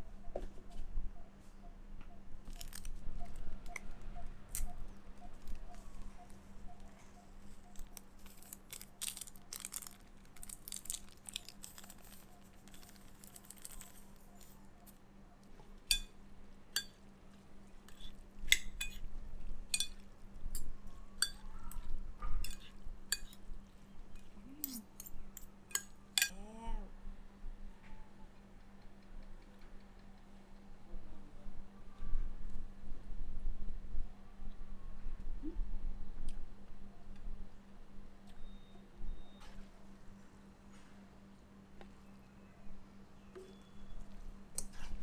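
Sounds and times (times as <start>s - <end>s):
cutlery clinking on dishes: 17.9s - 19.1s, 19.7s - 20.0s, 20.6s - 23.4s, 24.2s - 26.4s.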